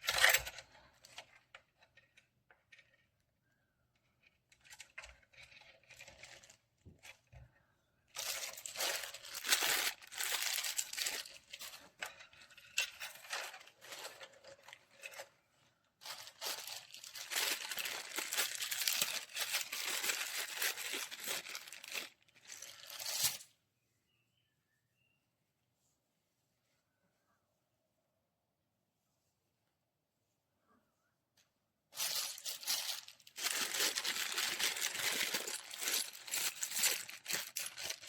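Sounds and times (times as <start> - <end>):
crinkling and tearing: 8.2 - 15.4, 16.0 - 23.5, 32.0 - 38.0.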